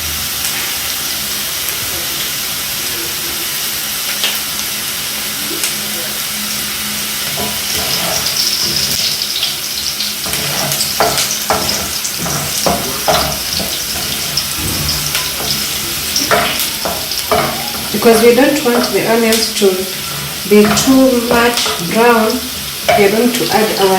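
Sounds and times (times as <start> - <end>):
onions sizzling in oil: 0.0 - 23.9
stirring scrapes in pan: 7.2 - 9.4, 10.2 - 19.0, 19.6 - 23.8.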